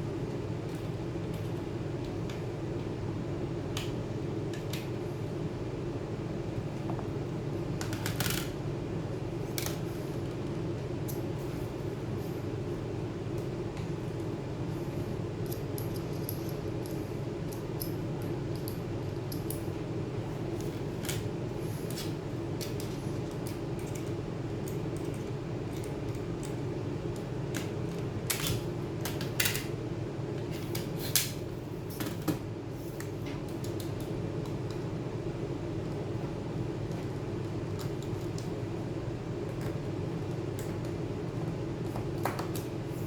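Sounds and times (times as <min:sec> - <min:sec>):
steady low hum: 0:00.0 - 0:43.0.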